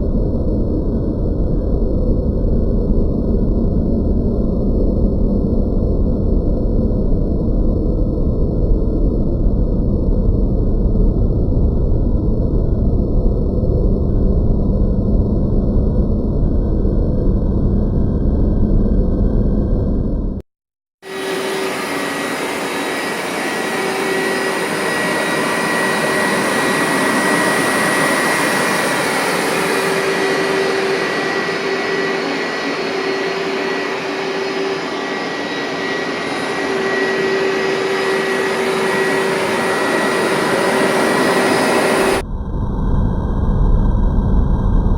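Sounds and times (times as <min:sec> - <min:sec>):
carpet cleaner vacuum motor whine: 0:21.0 - 0:42.2.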